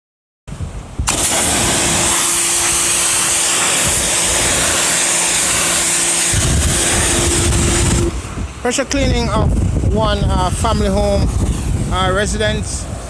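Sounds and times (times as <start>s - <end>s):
steady hum: 1.0s - 8.7s
pressure washer jet hissing: 1.0s - 8.9s.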